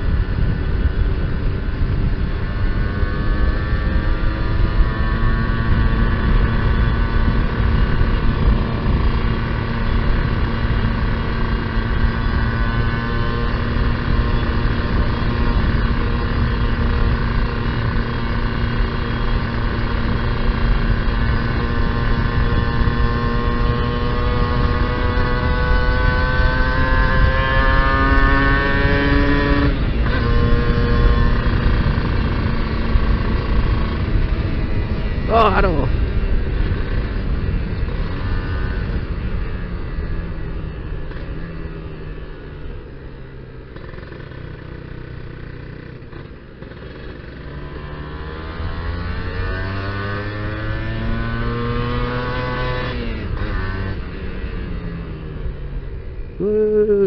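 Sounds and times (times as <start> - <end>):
wind on microphone: 0.0 - 12.3, 19.7 - 40.4
motorcycle engine running: 0.0 - 57.0.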